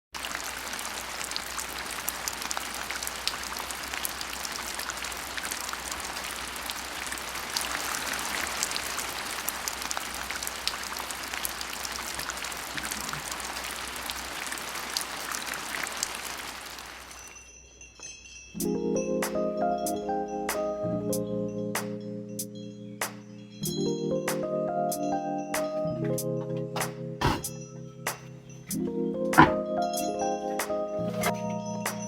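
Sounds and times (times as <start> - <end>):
oil sizzling in frying pan: 0.2 - 17.2.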